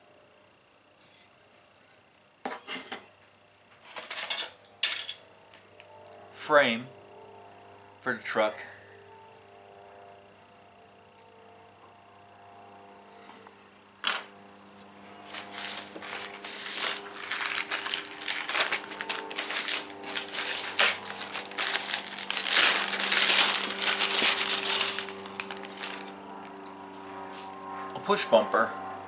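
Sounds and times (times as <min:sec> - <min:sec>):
plastic parts clattering: 0:15.3 - 0:26.2.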